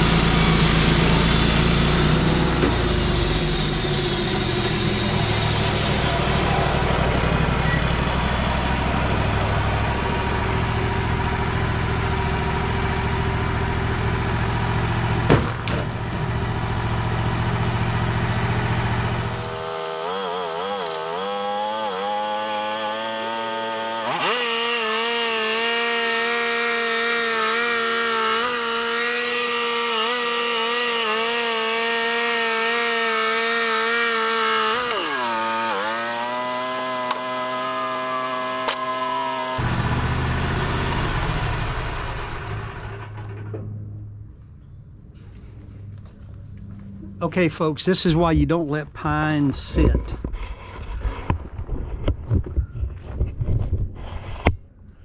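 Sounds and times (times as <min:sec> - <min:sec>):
band saw blade sawing log: 0:00.0 - 0:11.0, 0:18.6 - 0:39.6
pitched whine: 0:00.0 - 0:49.2
engine rumble: 0:00.0 - 0:55.0.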